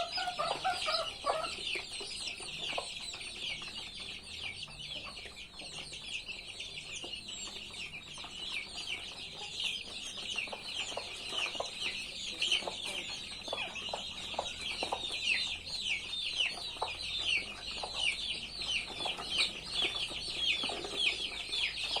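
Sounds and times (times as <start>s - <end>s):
chicks peeping: 0.0s - 22.0s
hen clucking: 0.0s - 22.0s.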